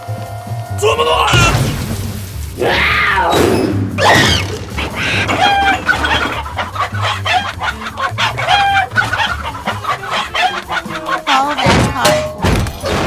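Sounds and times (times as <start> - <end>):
cartoon chicken clucking: 4.0 - 12.0.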